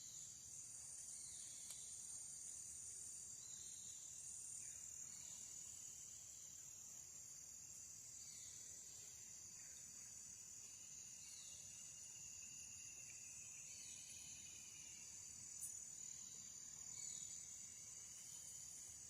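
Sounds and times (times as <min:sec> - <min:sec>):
insects chorus: 0:00.0 - 0:19.0
faint click: 0:01.0 - 0:01.9.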